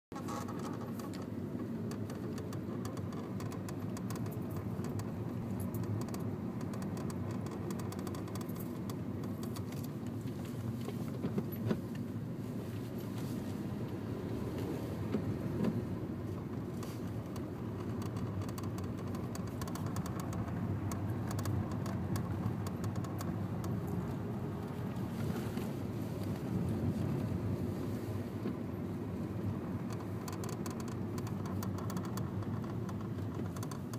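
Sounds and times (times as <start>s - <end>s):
car engine droning: 0.2s - 33.9s
faint clicks: 29.8s - 33.9s.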